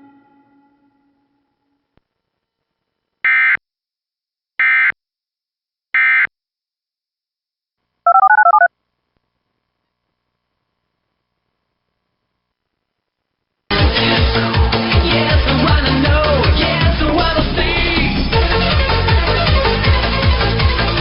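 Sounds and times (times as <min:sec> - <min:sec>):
electronic beeps: 0:08.1 - 0:08.7.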